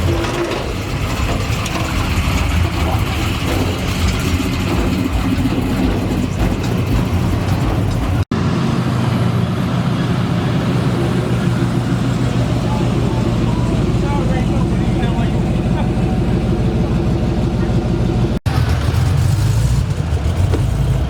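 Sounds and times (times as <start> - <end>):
vehicle engine running: 0.0 - 21.0
faint voices: 10.0 - 18.3.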